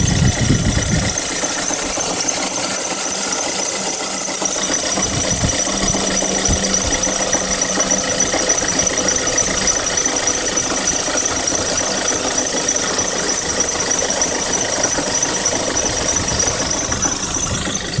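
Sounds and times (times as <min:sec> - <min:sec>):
high-pitched engine bay noise: 0:00.0 - 0:18.0.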